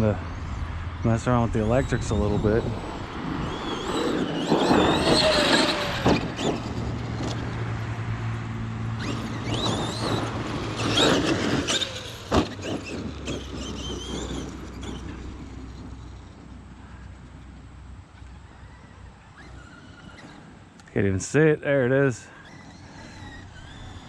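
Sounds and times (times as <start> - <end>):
tyres churning dirt: 1.0 - 24.0
electric motor whining: 1.2 - 17.4, 18.1 - 20.9, 22.3 - 24.0.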